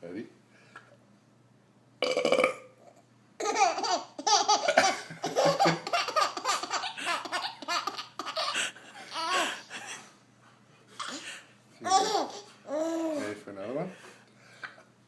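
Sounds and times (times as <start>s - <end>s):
baby laughing: 3.4s - 10.0s, 11.0s - 13.2s.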